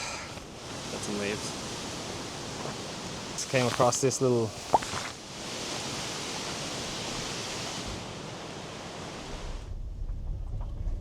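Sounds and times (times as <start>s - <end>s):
stream water running: 0.3s - 9.4s
wind rumble on microphone: 4.7s - 11.0s.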